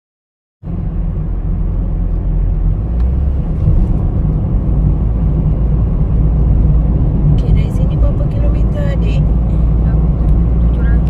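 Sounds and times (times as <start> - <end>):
car interior road and engine rumble: 0.6 - 11.0.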